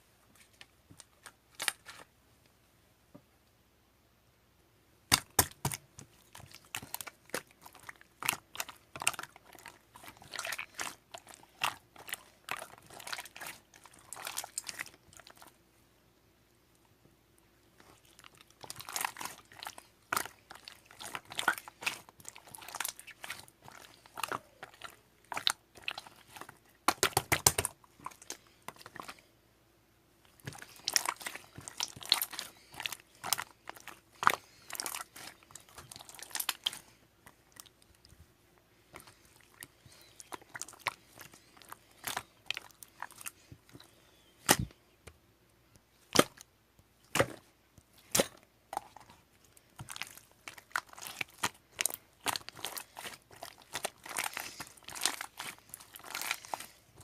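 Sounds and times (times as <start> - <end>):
crunching and clicking: 17.8 - 29.3, 30.3 - 38.2, 47.1 - 57.0.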